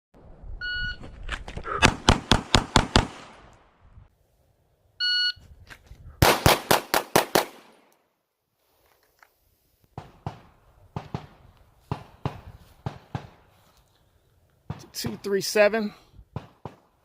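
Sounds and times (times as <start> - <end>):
pistol firing rapid shots: 1.8 - 3.4, 6.2 - 7.8, 16.4 - 16.9.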